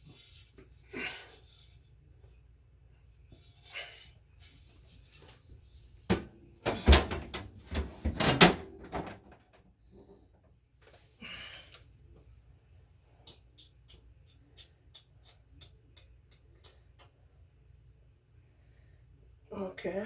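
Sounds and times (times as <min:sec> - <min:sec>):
refrigerator trays knocking and clattering: 0:06.1 - 0:09.6.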